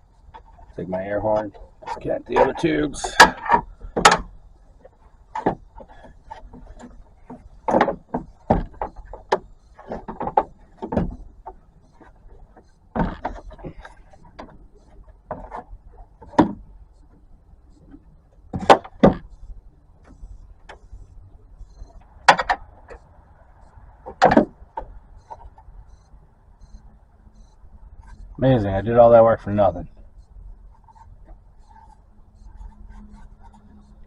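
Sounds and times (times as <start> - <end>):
plastic tubes clunking and rattling: 0.1 - 23.4, 24.0 - 25.8.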